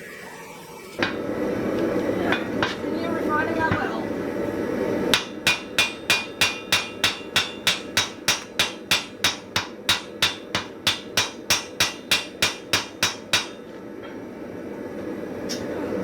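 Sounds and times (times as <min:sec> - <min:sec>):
hammer striking hot iron: 0:01.0 - 0:01.2, 0:02.3 - 0:02.9, 0:03.7 - 0:04.0, 0:05.1 - 0:14.2.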